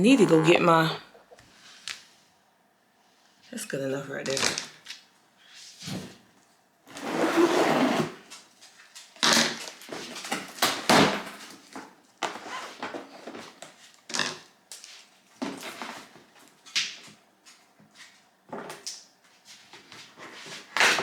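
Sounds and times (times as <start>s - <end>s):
cardboard rustling and scraping: 6.9s - 8.4s.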